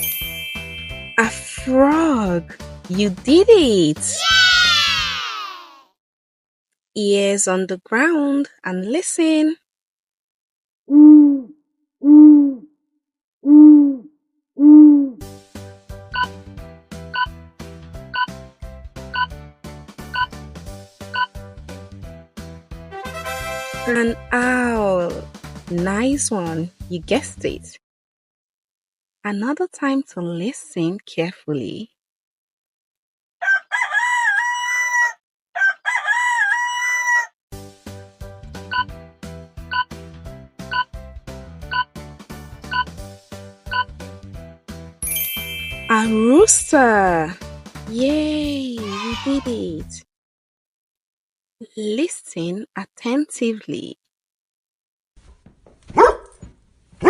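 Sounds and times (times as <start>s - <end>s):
music: 0.0s - 5.0s, 15.2s - 27.7s, 37.5s - 50.0s
rooster crowing: 33.4s - 37.4s.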